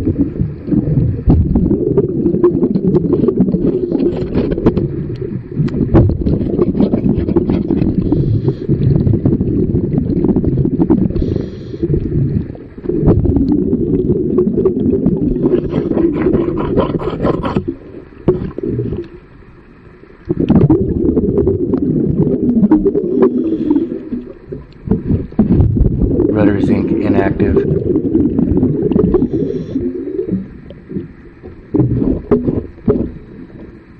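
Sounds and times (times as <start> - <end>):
diver's bubbles gurgling underwater: 0.0 - 19.5, 20.2 - 33.9
inhale through regulator: 8.0 - 8.8, 11.1 - 12.2, 23.0 - 24.2, 29.0 - 30.3.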